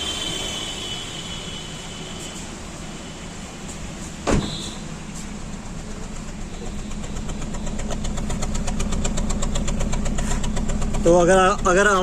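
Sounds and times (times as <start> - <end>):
misfiring car engine idling: 4.5 - 12.0
exhaust silencer shaking: 5.3 - 12.0.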